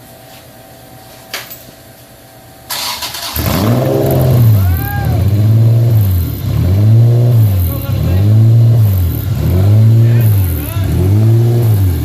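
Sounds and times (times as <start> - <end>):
starter cranking engine: 2.7 - 4.6
car engine revving: 2.7 - 12.0.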